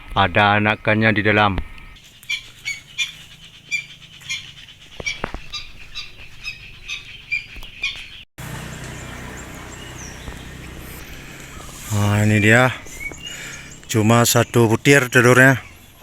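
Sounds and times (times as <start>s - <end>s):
steady outdoor hiss: 0.0s - 7.0s, 8.4s - 16.0s
nestling birds cheeping: 0.4s - 16.0s.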